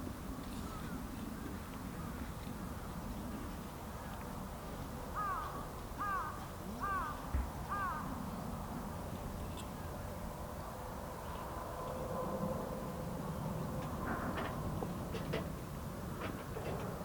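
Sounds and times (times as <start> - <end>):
crow cawing: 5.2 - 8.0.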